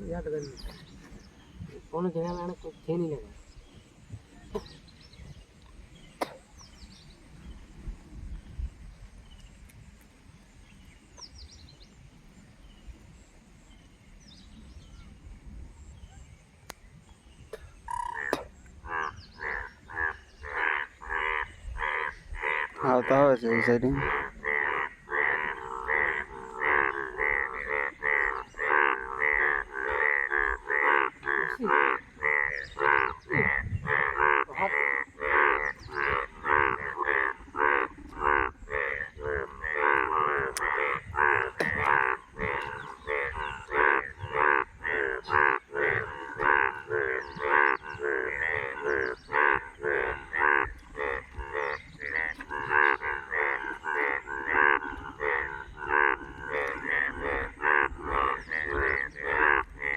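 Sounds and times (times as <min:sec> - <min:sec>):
chorus of frogs calling: 0:17.5 - 0:59.9.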